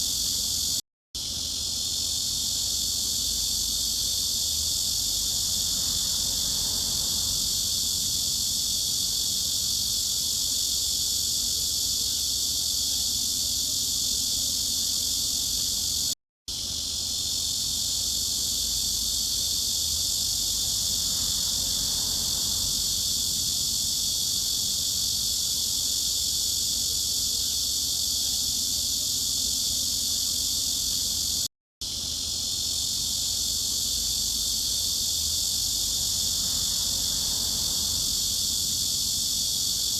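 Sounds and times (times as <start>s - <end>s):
cicadas droning: 0.0s - 39.9s.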